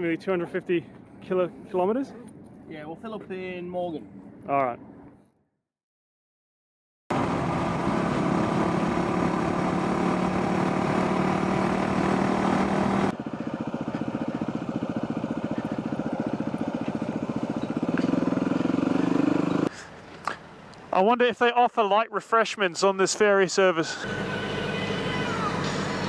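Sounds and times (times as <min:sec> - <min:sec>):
motorcycle engine running: 0:07.1 - 0:20.8, 0:24.0 - 0:26.0.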